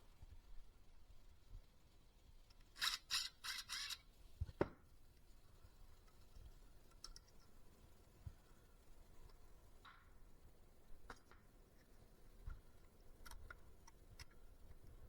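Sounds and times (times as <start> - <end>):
screw rasping in plastic: 2.7 - 4.0.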